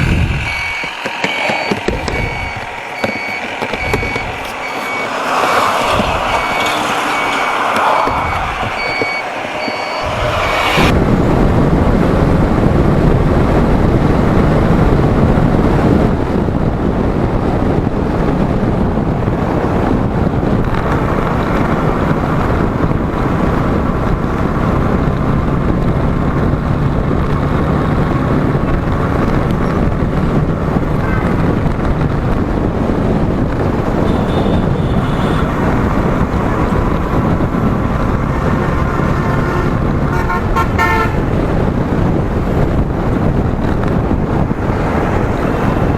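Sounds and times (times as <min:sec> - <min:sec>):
motorcycle road noise: 0:00.0 - 0:45.9
traffic: 0:00.0 - 0:45.9
wind rush: 0:00.0 - 0:45.9
vehicle horns honking: 0:00.5 - 0:10.9, 0:31.0 - 0:31.5, 0:34.0 - 0:35.8, 0:39.3 - 0:41.4.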